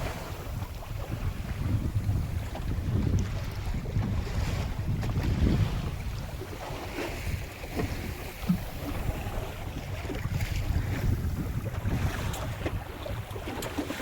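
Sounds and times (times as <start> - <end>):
water lapping at hull: 0.0 - 14.0
wind buffeting microphone: 0.0 - 14.0.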